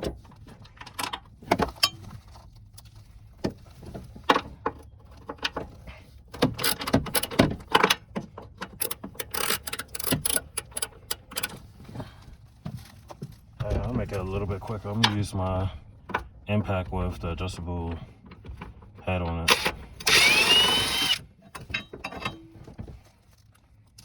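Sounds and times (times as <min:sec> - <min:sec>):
socket and ratchet clicking on bolts: 0:08.7 - 0:11.6.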